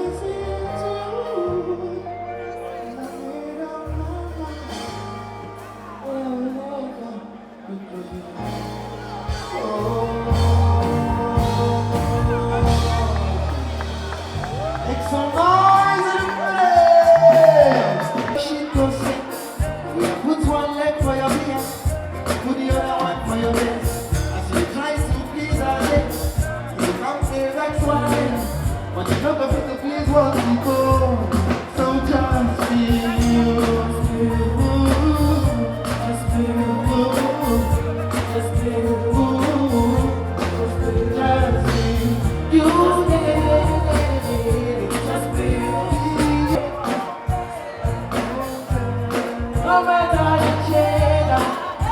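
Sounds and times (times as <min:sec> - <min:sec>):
loud party music: 0:00.0 - 0:51.9
person singing: 0:00.0 - 0:51.9
steady drum beat: 0:09.2 - 0:51.9.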